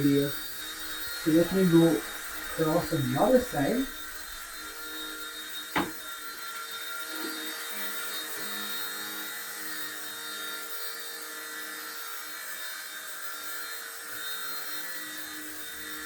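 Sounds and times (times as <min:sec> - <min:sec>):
small helicopter rotor whirring: 0:00.0 - 0:16.0
sharp click: 0:05.8 - 0:06.0.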